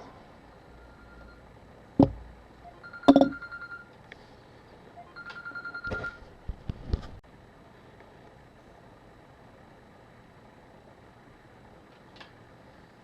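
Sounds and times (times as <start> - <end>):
sharp knocks: 2.0 - 2.3
high electronic beeping: 2.6 - 3.7.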